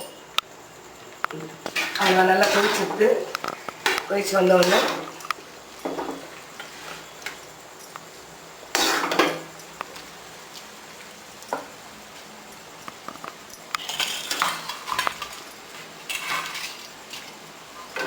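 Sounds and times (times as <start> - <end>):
spoon scraping a pan: 1.7 - 4.0, 8.7 - 9.4, 16.0 - 18.0.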